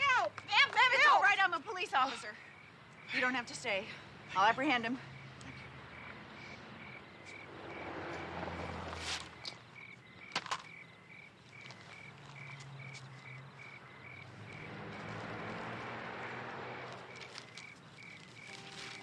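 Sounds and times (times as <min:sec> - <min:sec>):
crickets chirping: 0:00.0 - 0:19.0
rustling: 0:08.8 - 0:09.6, 0:16.9 - 0:19.0.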